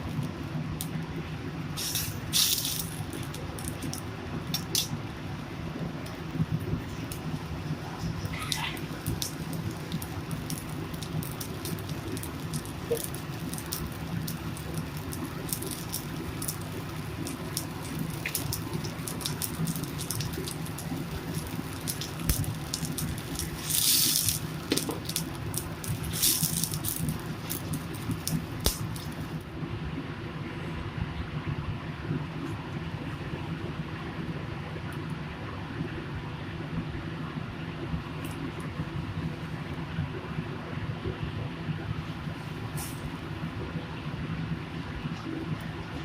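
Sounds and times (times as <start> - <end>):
food sizzling in hot oil: 1.7 - 5.0, 8.0 - 29.4.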